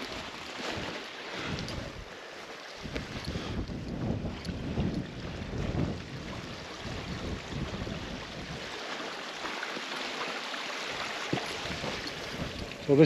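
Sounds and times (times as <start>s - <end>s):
wind rumble on microphone: 0.0s - 9.6s, 10.9s - 13.0s
stream running water: 0.0s - 13.0s.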